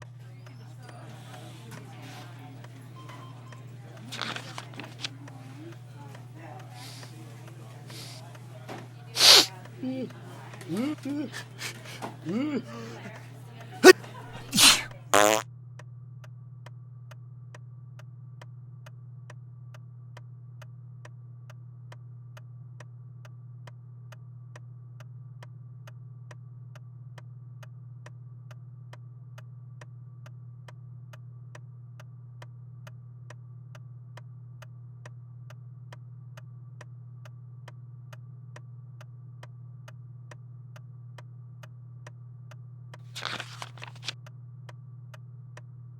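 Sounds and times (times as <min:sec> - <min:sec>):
short loud noise bursts: 0:09.2 - 0:09.5.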